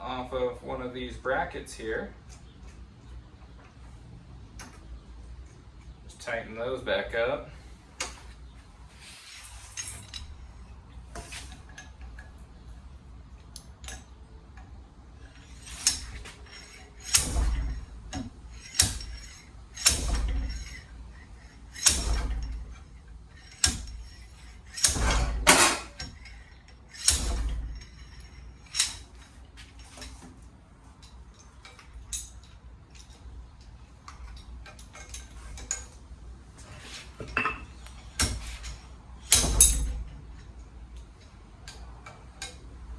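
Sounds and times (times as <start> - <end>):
metal tools clanking on metal: 8.0 - 12.8, 13.6 - 42.9.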